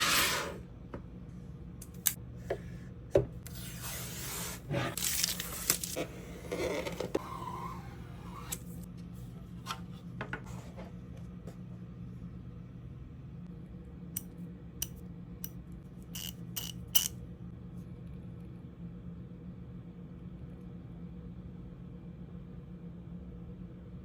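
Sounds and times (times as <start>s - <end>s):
packaging rubbing and scraping: 3.5s - 8.5s.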